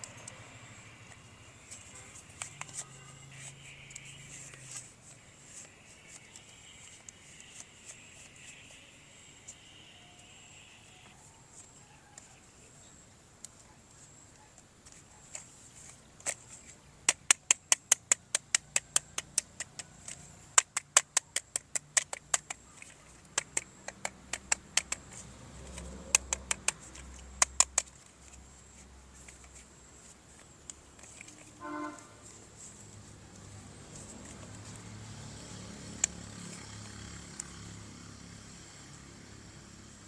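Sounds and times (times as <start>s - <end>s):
toy plastic clicks: 0.0s - 10.7s, 14.8s - 31.5s.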